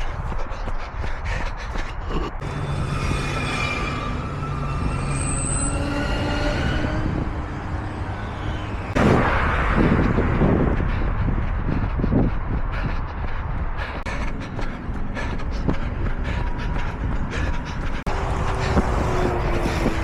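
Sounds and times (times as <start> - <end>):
train rolling noise: 2.2 - 20.0
pulsing rush of noise: 6.0 - 20.0.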